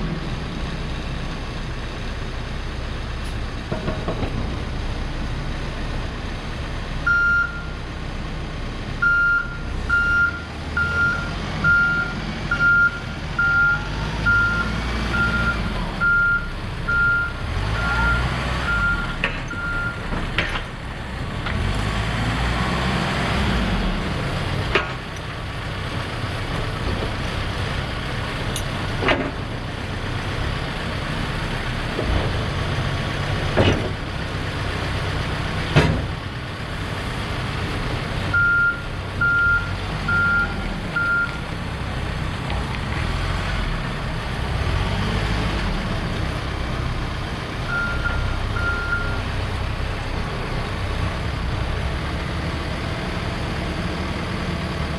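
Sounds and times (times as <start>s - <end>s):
diesel engine running: 0.0s - 54.9s
reversing alarm beeps: 7.1s - 7.7s, 9.0s - 20.0s, 38.4s - 41.4s, 47.7s - 49.2s
sharp clunks: 35.7s - 36.1s.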